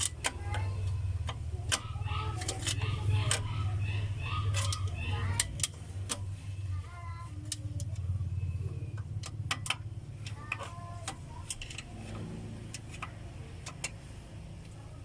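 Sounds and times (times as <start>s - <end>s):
sharp metallic clicks: 0.0s - 6.4s, 7.0s - 14.8s
engine running with pulsing hum: 0.0s - 15.0s.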